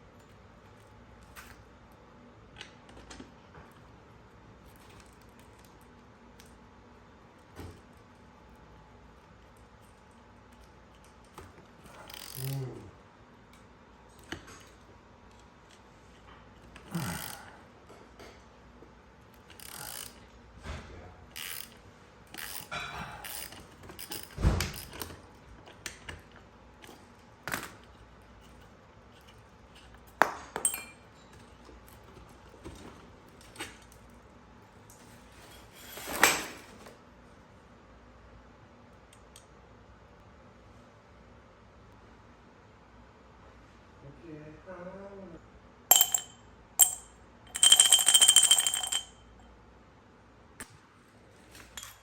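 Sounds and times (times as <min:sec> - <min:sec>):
workshop clinks and knocks: 0:22.6 - 0:25.1, 0:30.2 - 0:31.5, 0:35.4 - 0:36.8.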